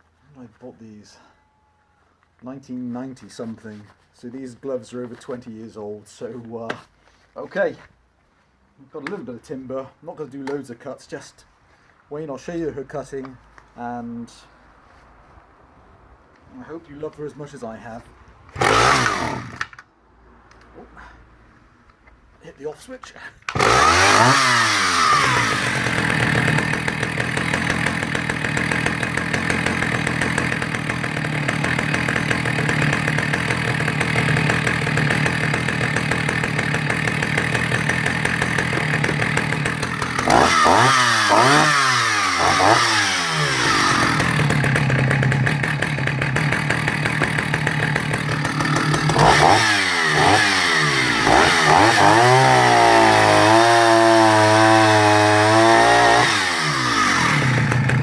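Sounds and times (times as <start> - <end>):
chainsaw idling and revving: 18.5 - 19.9, 23.5 - 58.0.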